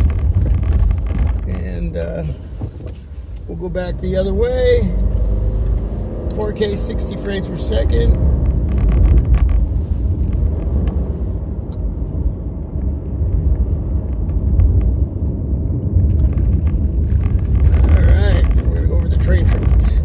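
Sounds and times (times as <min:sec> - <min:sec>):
knocks and rattles: 0:00.0 - 0:01.8, 0:08.1 - 0:09.7, 0:16.1 - 0:20.0
car road rumble: 0:00.0 - 0:20.0.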